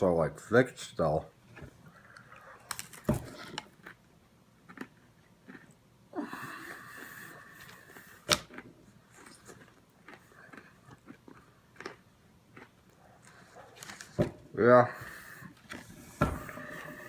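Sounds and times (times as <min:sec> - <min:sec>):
chewing clicks: 0:07.6 - 0:14.0
wheezing breath out: 0:14.8 - 0:17.0.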